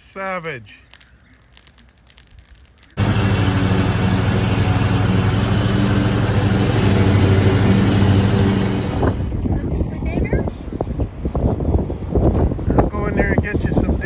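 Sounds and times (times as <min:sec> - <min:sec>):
motor running with low hum: 0:03.0 - 0:09.4.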